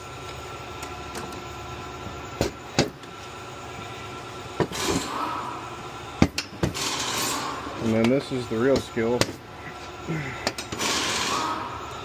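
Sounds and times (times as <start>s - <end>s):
background hum: 0.0s - 12.0s
clutch parts clicking and knocking: 10.4s - 10.8s.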